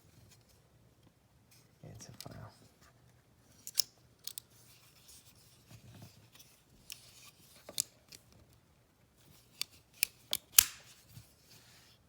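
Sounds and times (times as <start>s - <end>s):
multitool metal clicks: 10.0s - 10.8s.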